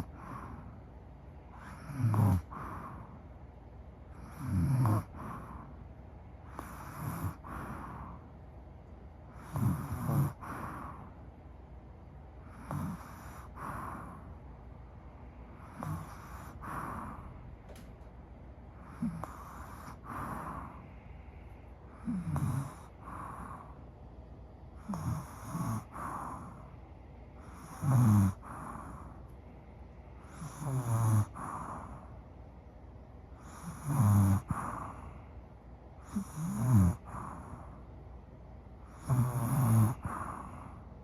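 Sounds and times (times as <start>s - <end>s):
woman snoring: 0.0s - 0.8s, 1.5s - 3.1s, 4.2s - 5.7s, 6.5s - 8.2s, 9.3s - 11.1s, 12.5s - 14.3s, 15.6s - 17.4s, 18.8s - 20.9s, 21.9s - 23.8s, 24.8s - 26.7s, 27.4s - 29.1s, 30.2s - 32.1s, 33.4s - 35.2s, 36.0s - 37.8s, 38.9s - 40.8s.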